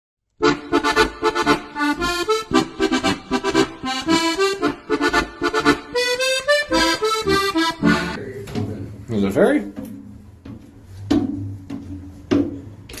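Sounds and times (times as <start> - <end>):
accordion music: 0.4 - 8.3.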